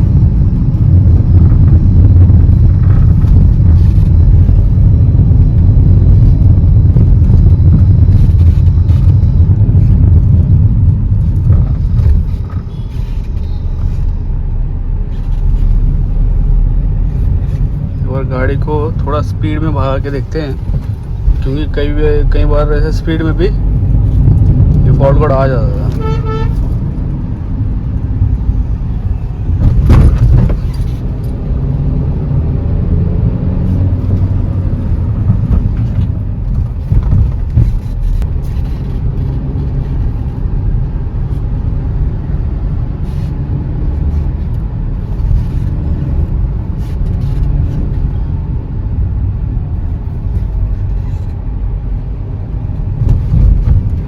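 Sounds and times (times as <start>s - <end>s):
car engine and road noise: 0.0s - 54.0s
loud thump: 29.6s - 30.7s.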